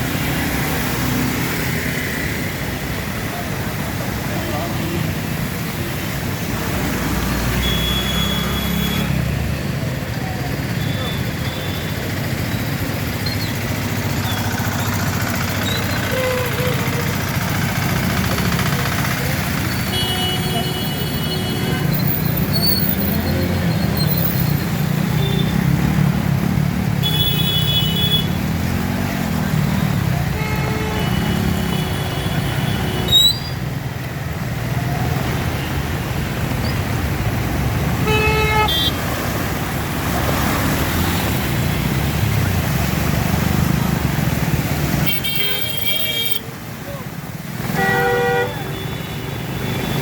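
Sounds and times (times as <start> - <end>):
traffic engines running: 0.0 - 50.0
vehicle horns honking: 19.8 - 22.6, 27.0 - 28.4, 38.0 - 39.1, 45.0 - 46.5, 47.6 - 50.0.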